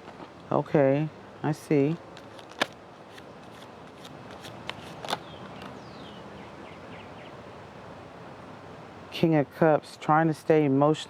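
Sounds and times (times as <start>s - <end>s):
cards clicking and tapping: 2.0s - 5.8s.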